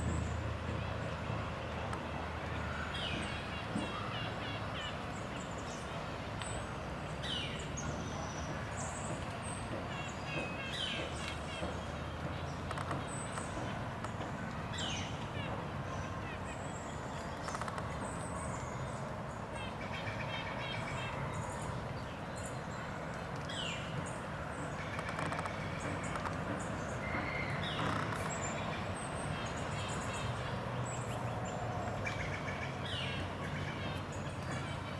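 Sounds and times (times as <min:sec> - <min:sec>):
distant traffic rumble: 0:00.0 - 0:34.9
birds chirping: 0:02.6 - 0:34.9.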